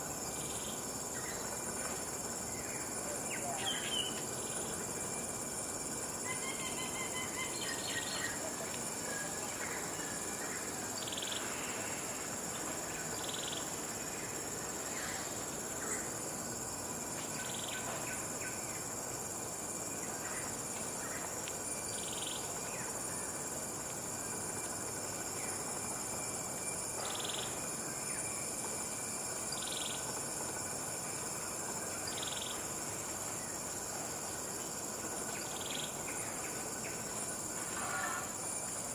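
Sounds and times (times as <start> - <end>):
high-pitched insect drone: 0.0 - 38.9
faint bird chirps: 6.2 - 8.4.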